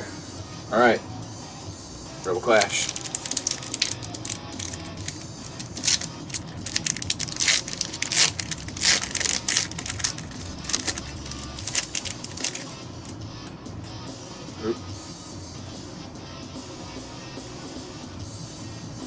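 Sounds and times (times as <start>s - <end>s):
foil wrapper crinkling and tearing: 2.3s - 13.1s.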